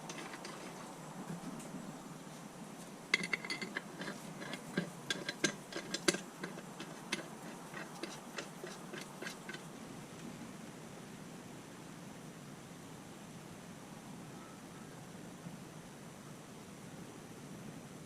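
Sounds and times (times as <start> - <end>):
metal tools clicking and tapping: 0.0 - 0.7, 3.1 - 9.7.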